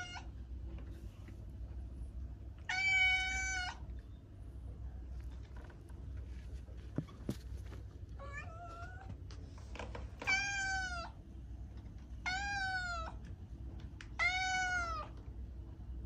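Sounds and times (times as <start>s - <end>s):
cat meowing: 0.0s - 0.3s, 2.6s - 3.8s, 8.2s - 9.2s, 10.2s - 11.2s, 12.2s - 13.2s, 14.1s - 15.2s
steady low hum: 0.0s - 16.0s.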